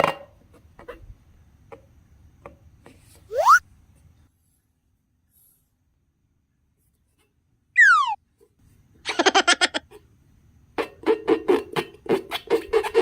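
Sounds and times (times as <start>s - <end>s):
cartoon falling whistle: 3.3s - 3.6s, 7.8s - 8.2s
giggling laughter: 9.1s - 9.8s.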